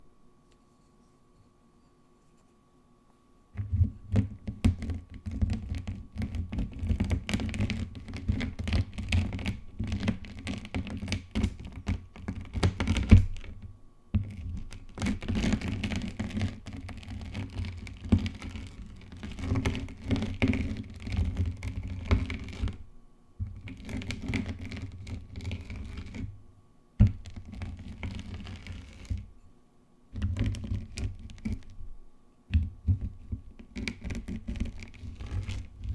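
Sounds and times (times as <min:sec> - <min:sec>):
chalk block crumbling and crackling: 0:32.5 - 0:35.9.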